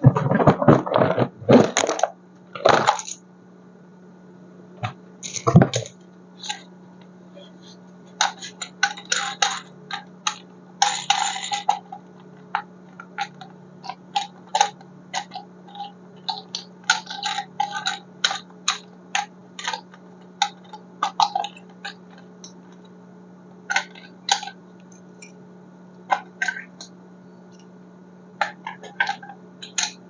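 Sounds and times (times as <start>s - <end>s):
plastic objects clicking and tapping: 0.0s - 3.2s, 8.2s - 22.9s, 23.7s - 25.3s, 28.4s - 30.0s
faint low hum: 0.0s - 30.0s.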